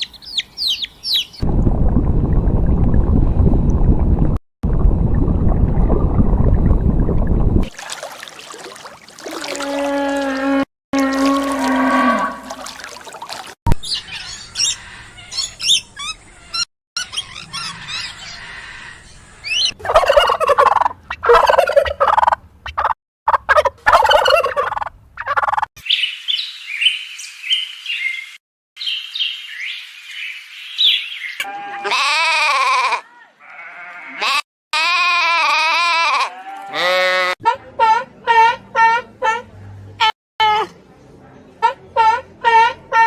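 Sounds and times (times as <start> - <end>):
high bird chirps: 0.0 - 1.4
loud poultry calls: 14.0 - 16.2, 17.0 - 22.2.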